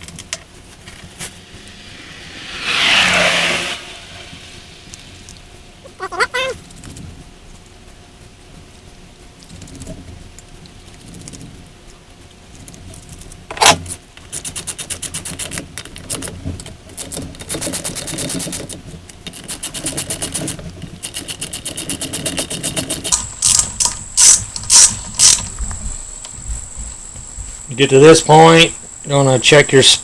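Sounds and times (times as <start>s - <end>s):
socket ratchet clicking: 13.6s - 23.2s.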